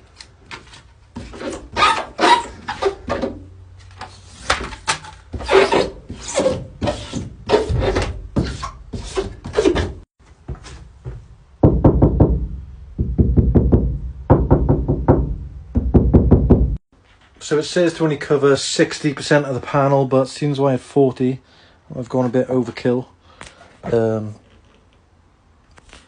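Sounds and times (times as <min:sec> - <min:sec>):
rubbing mats on metal panel: 0:00.0 - 0:11.4
rapid knocks on metal panel: 0:11.6 - 0:16.8.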